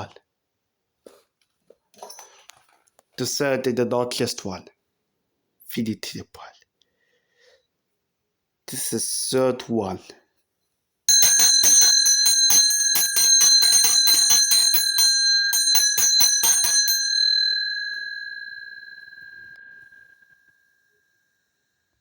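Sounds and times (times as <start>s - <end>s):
handbell ringing: 11.1s - 20.4s.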